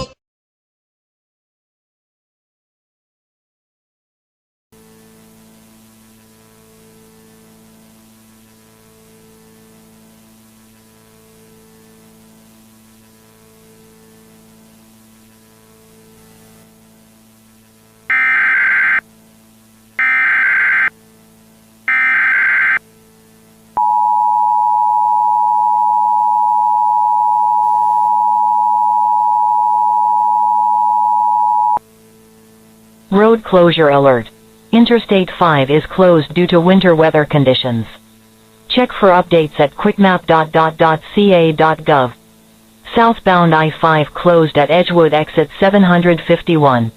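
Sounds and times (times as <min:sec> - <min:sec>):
faint low hum: 0:04.8 - 0:46.9
warbling data bursts: 0:18.1 - 0:19.0, 0:20.0 - 0:20.9, 0:21.9 - 0:22.8
two-tone attention signal: 0:23.8 - 0:31.8.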